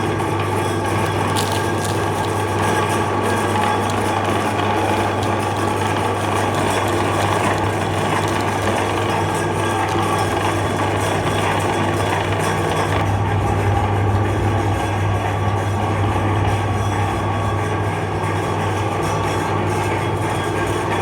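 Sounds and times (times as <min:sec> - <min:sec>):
electric meat grinder humming: 0:00.0 - 0:13.1.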